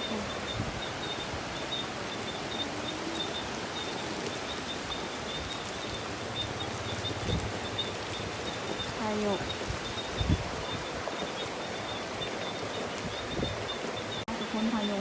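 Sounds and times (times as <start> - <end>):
storm wind and rain: 0.0 - 15.0.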